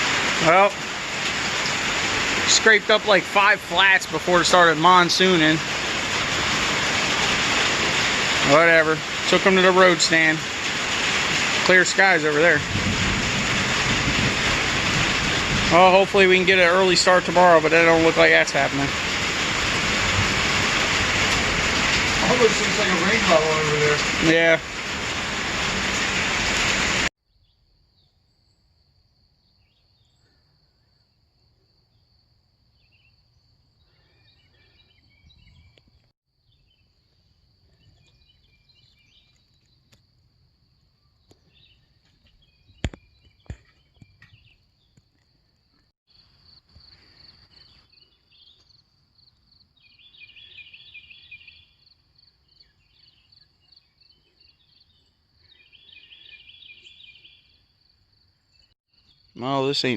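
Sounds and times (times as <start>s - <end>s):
bird chirps: 46.8s - 59.5s.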